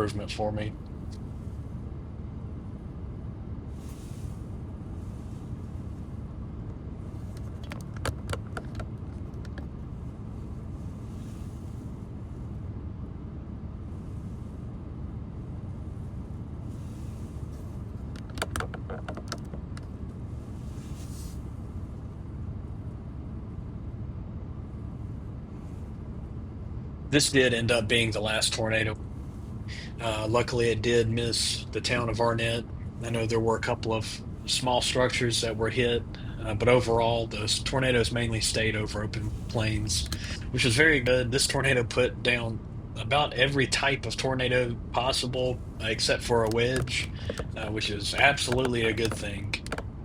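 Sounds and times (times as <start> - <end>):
low rumbling vehicle noise: 0.0 - 50.0
rattling clicks: 18.1 - 19.9, 46.4 - 49.9.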